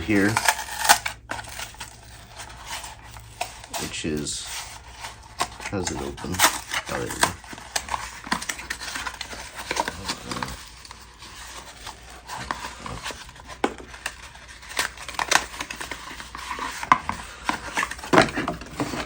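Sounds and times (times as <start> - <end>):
plastic parts clicking and knocking: 12.3 - 19.0.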